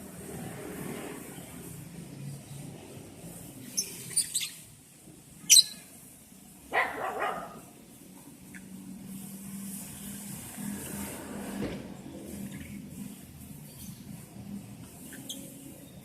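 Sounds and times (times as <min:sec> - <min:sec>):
shrill bird chirps: 0:03.7 - 0:04.6, 0:05.4 - 0:05.9
dog barking: 0:06.7 - 0:07.7.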